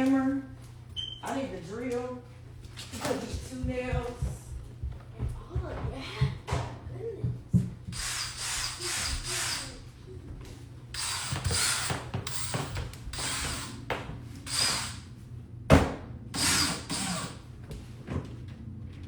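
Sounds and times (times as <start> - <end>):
tool scraping at a nail: 8.0 - 9.8.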